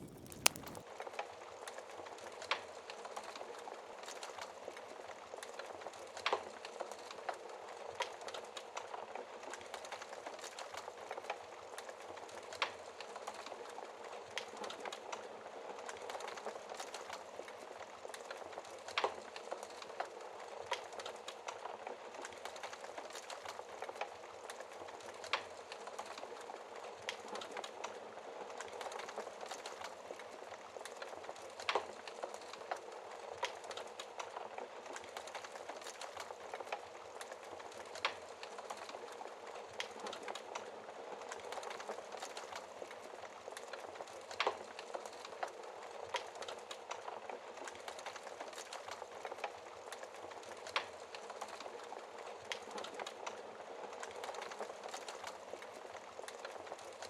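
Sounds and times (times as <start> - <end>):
loud fire pop: 0.0 - 0.8
wood fire crackling: 0.0 - 0.8, 5.4 - 57.0.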